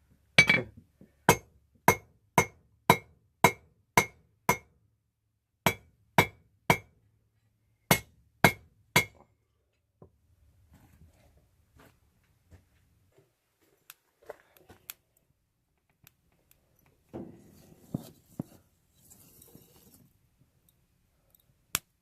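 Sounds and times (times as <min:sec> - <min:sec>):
hammer striking metal on anvil: 0:00.4 - 0:00.7, 0:01.3 - 0:04.7, 0:05.7 - 0:06.9, 0:07.9 - 0:09.2.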